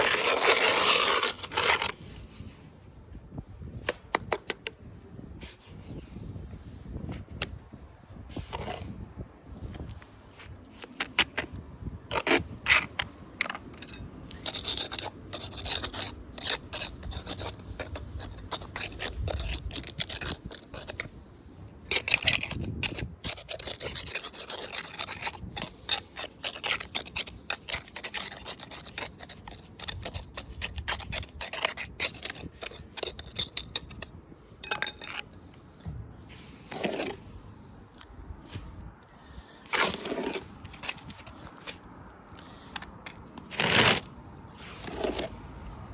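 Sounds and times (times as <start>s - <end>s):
hand tool scraping stone: 0.0s - 2.0s, 8.3s - 8.9s, 10.4s - 21.1s, 21.8s - 35.4s, 36.3s - 37.3s, 39.6s - 45.4s.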